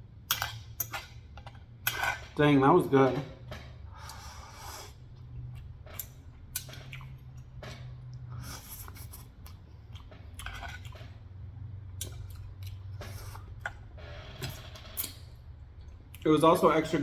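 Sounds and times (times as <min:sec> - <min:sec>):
low steady hum: 0:00.0 - 0:17.0
person chewing food: 0:03.8 - 0:16.3.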